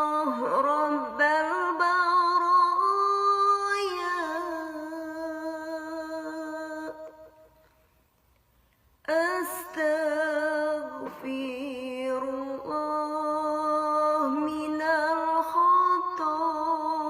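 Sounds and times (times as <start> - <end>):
solo voice chanting: 0.0 - 7.6.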